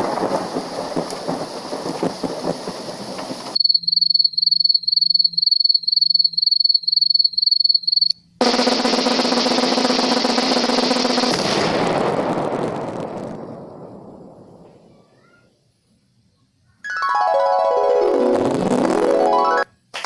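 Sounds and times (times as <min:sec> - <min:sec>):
rain hiss with crackles: 0:00.0 - 0:03.6
cricket chirping: 0:00.0 - 0:09.8, 0:13.1 - 0:16.8
snare drum roll: 0:08.4 - 0:11.9.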